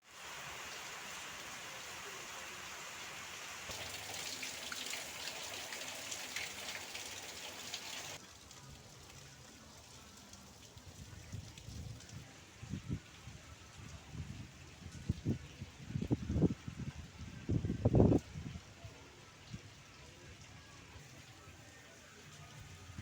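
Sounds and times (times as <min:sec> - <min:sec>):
rain falling: 0:00.0 - 0:23.0.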